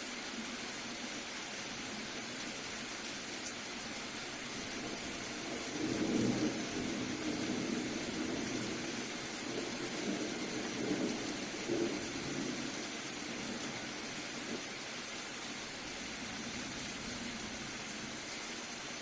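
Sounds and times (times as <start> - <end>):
soft rain hiss: 0.0 - 19.0
distant thunder rumble: 4.5 - 14.8.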